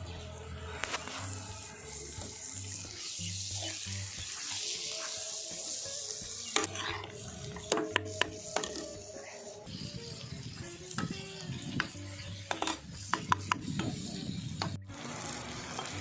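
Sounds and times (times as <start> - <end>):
water running: 0.8 - 13.9.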